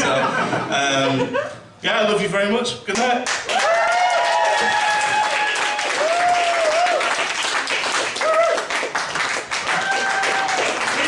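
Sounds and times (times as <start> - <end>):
audience clapping: 2.9 - 11.0.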